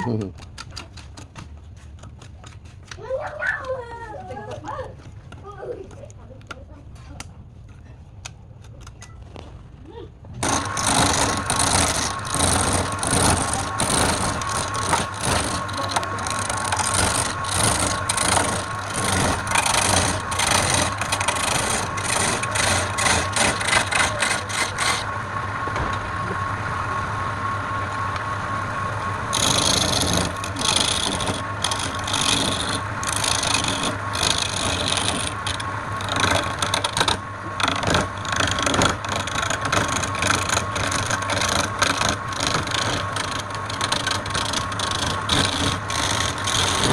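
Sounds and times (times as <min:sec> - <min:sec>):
tool scraping spinning wood: 0:10.4 - 0:26.5, 0:27.9 - 0:46.9
lathe motor hum: 0:10.4 - 0:46.9.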